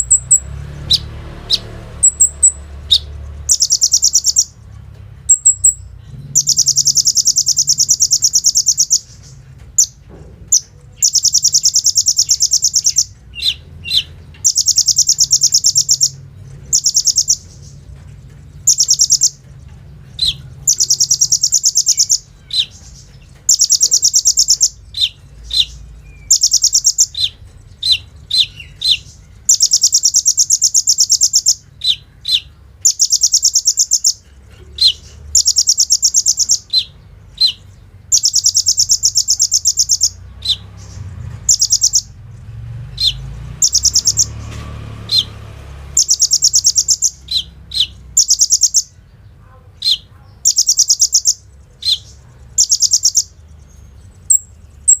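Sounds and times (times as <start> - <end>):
bird rattling trills: 0.0 - 4.6, 5.3 - 17.8, 18.4 - 19.5, 20.1 - 31.6, 37.5 - 42.1, 43.0 - 48.9
bird sharp chips: 18.6 - 42.1, 43.0 - 49.0.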